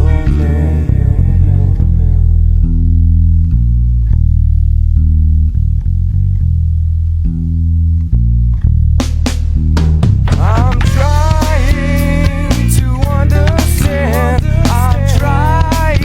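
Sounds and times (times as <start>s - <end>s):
person singing: 0.0s - 2.5s, 10.3s - 16.0s
bass guitar low notes: 0.0s - 16.0s.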